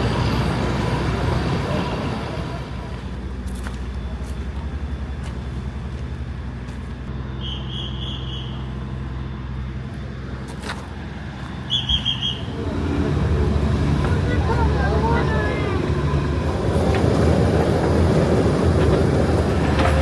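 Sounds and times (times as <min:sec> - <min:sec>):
low engine drone: 0:00.0 - 0:20.0.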